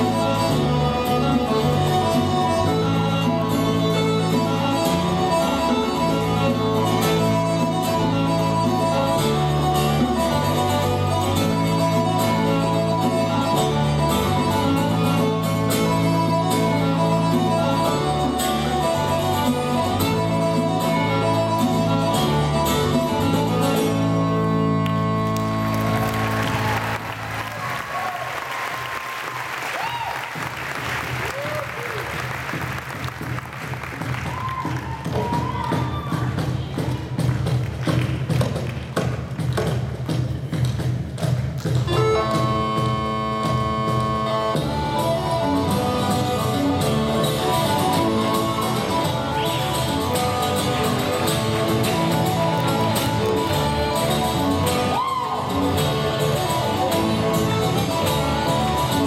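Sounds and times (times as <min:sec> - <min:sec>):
instrumental music with bass line: 0:00.0 - 0:27.7, 0:30.4 - 0:59.0
audience applause: 0:24.8 - 0:38.9, 0:49.9 - 0:56.0.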